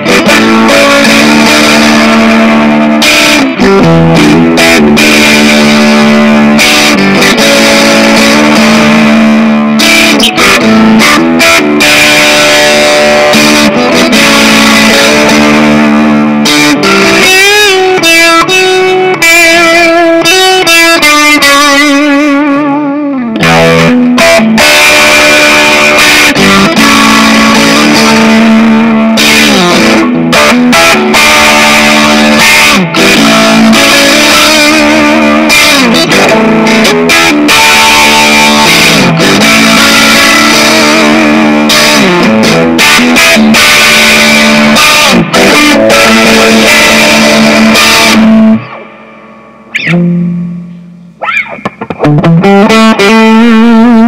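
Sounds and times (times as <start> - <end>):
distorted electric guitar: 0.0 - 54.0.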